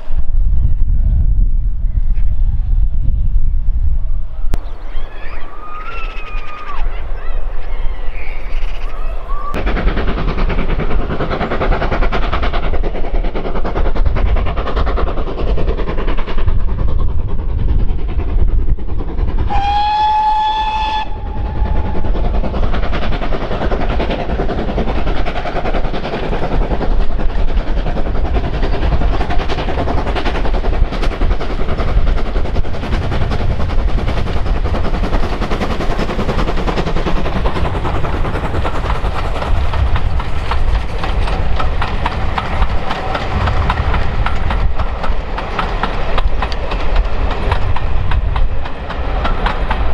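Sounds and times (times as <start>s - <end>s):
steam locomotive rumbling: 0.0s - 49.9s
steam whistle blast: 19.5s - 21.8s.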